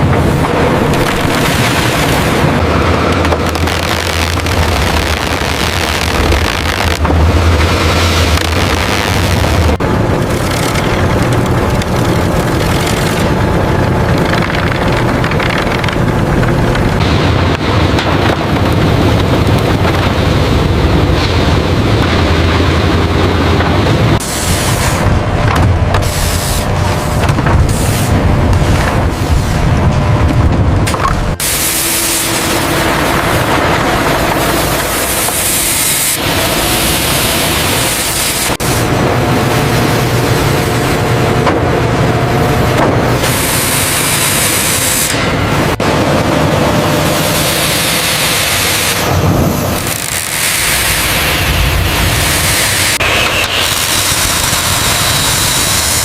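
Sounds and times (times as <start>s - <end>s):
heavy machinery engine running: 0.0s - 56.0s.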